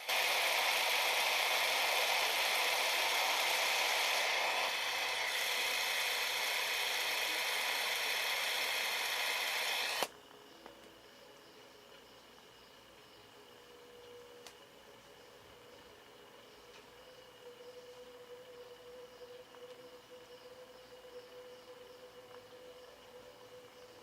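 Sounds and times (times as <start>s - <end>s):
fidget spinner whirring: 0.0s - 10.1s
spinner stopping click: 0.1s - 10.1s.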